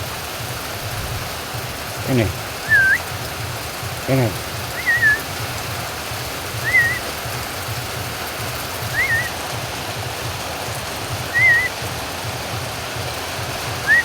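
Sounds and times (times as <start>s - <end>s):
steady rain: 0.0s - 14.0s
bird whistled chirp: 2.6s - 3.2s, 4.7s - 5.4s, 6.5s - 7.4s, 8.8s - 9.4s, 11.2s - 11.9s, 13.8s - 14.0s.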